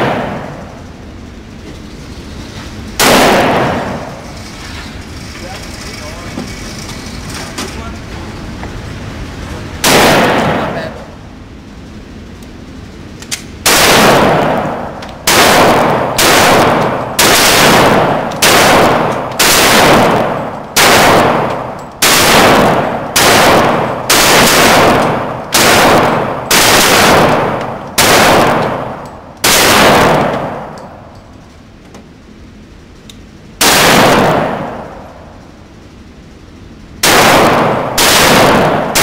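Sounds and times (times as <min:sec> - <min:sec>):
pistol shots echoing: 0:00.0 - 0:00.6, 0:03.0 - 0:04.2, 0:09.8 - 0:11.1, 0:13.6 - 0:31.1, 0:33.6 - 0:35.2, 0:37.0 - 0:39.0.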